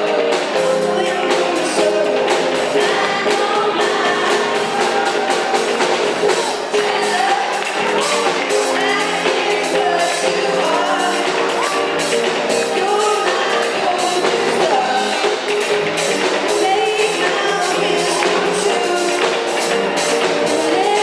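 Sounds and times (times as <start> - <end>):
drum beat: 0.0 - 21.0
live band playing: 0.0 - 21.0
person singing: 0.0 - 21.0.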